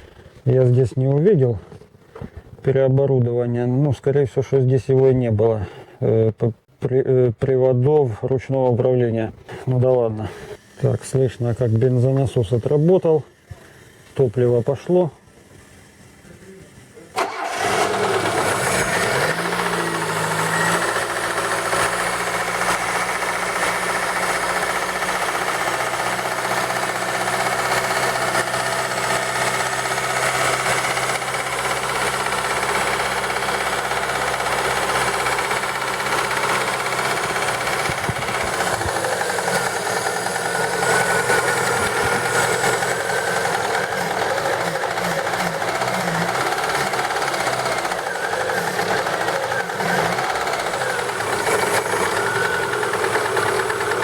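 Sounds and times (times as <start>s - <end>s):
engine cranking and starting: 9.5s - 54.0s
engine idling with knock: 17.3s - 54.0s.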